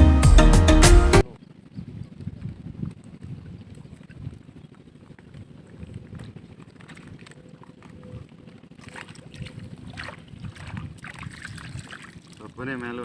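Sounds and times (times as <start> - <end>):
wind buffeting microphone: 1.5 - 13.0.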